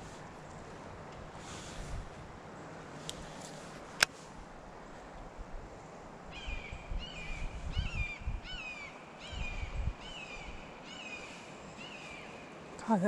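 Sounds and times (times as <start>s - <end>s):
bird calling: 6.3s - 13.0s.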